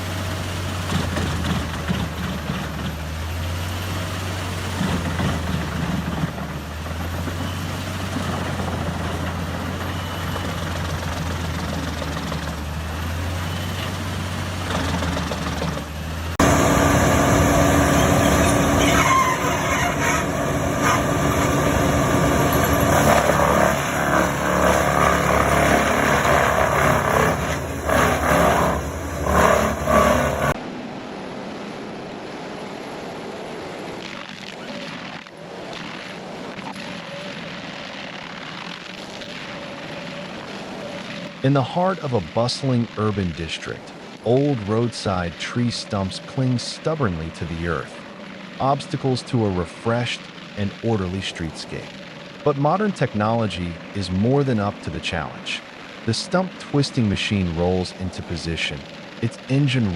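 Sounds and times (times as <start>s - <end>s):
logs grinding in chipper: 0.0s - 30.6s
wood chipper engine running: 0.0s - 30.6s.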